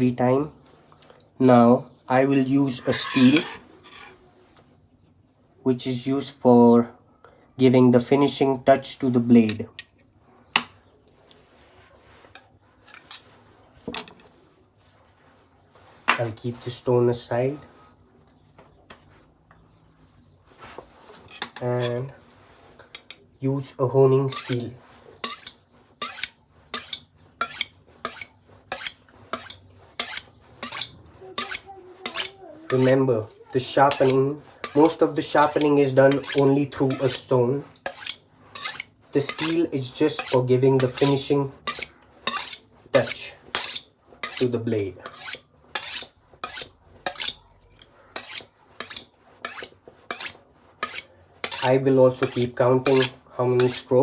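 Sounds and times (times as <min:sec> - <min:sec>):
knife scraping on honing rod: 0:02.5 - 0:04.2, 0:12.3 - 0:14.3, 0:21.1 - 0:23.2, 0:24.2 - 0:54.0.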